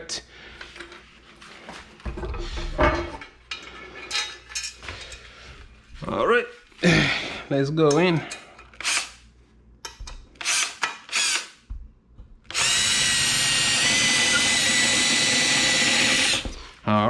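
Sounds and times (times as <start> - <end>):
power drill driving screw: 8.8 - 9.2, 10.4 - 11.6, 12.5 - 16.6.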